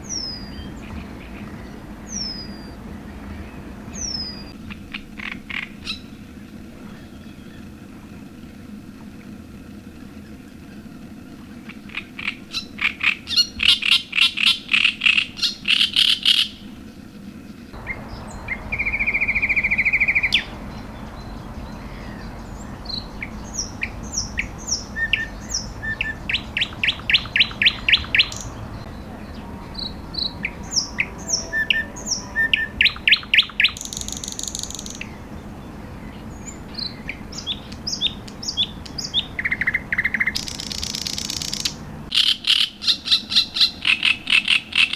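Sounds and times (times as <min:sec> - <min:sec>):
buzzy bird trill: 0:00.0 - 0:04.6, 0:17.8 - 0:44.9
birds chirping: 0:00.0 - 0:07.8, 0:10.3 - 0:44.9
low background noise: 0:00.0 - 0:44.9
high whistled bird notes: 0:17.8 - 0:35.3.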